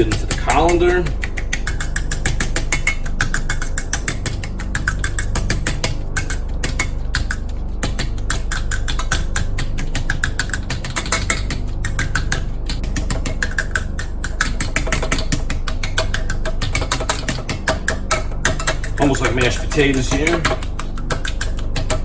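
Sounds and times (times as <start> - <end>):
steady low hum: 0.0 - 22.0
utensil clicking and tapping in dish: 0.0 - 22.0.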